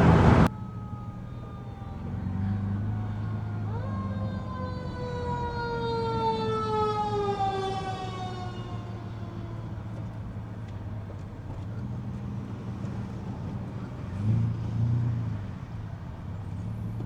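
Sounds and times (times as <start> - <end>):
siren wailing: 0.0 - 10.0
low car drone: 0.0 - 11.7.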